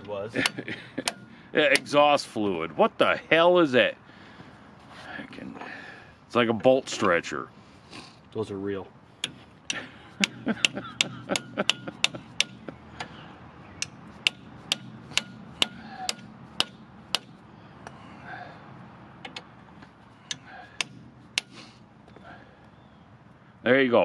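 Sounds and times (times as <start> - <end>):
sharp metallic taps: 0.0 - 2.1, 9.2 - 18.0, 19.2 - 22.2.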